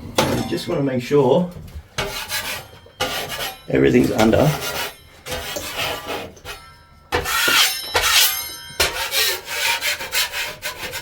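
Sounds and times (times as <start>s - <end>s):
scraping across plasterboard: 1.8s - 11.0s.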